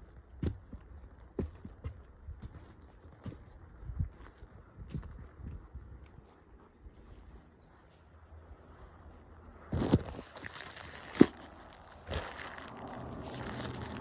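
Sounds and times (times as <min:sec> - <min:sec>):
bird chirping: 0:06.6 - 0:08.0
clothing rustling against phone: 0:09.7 - 0:14.0.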